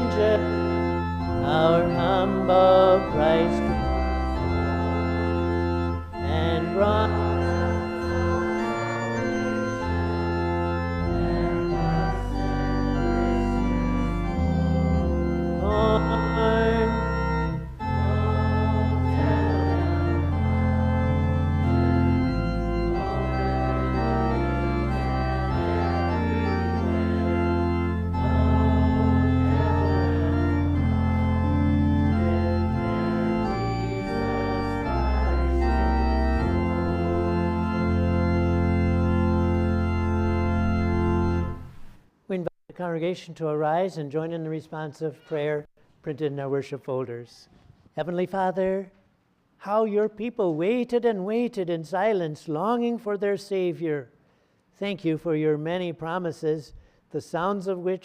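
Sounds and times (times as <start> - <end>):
church organ playing chords: 0.0 - 42.0, 54.8 - 58.0.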